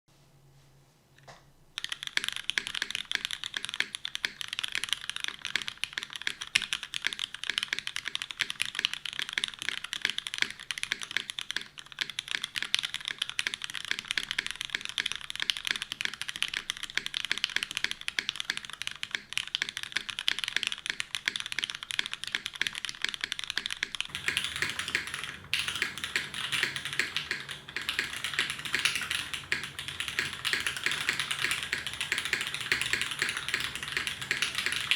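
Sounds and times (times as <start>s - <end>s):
mechanical keyboard typing: 1.8s - 34.9s.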